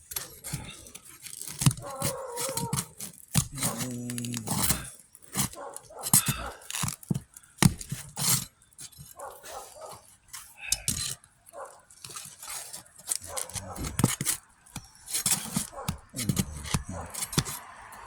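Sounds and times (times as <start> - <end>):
shingle being pried off roof: 0.0 - 18.0
dog barking and whining: 1.8 - 6.7, 9.2 - 10.0, 13.2 - 14.1, 15.4 - 17.5.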